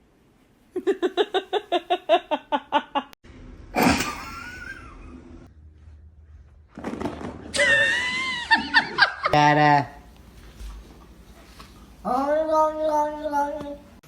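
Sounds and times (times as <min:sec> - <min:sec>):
person laughing: 0:00.8 - 0:03.2, 0:03.8 - 0:05.2.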